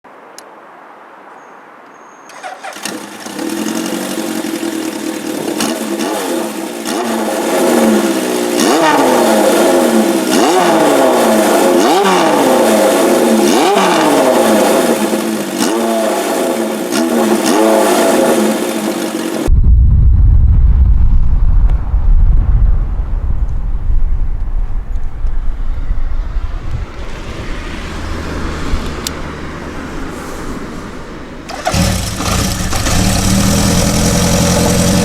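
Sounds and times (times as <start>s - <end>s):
motorcycle engine revving: 2.3s - 19.5s, 31.4s - 35.0s
motorcycle engine starting: 2.3s - 19.5s, 31.4s - 35.0s.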